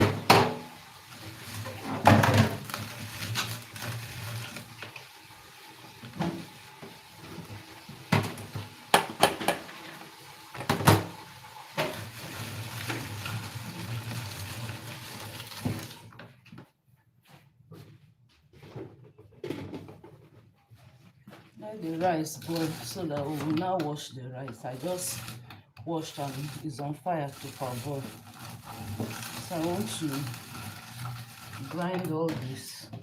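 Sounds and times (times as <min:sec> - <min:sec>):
pots and utensils knocking: 0:00.0 - 0:00.7, 0:08.1 - 0:09.7.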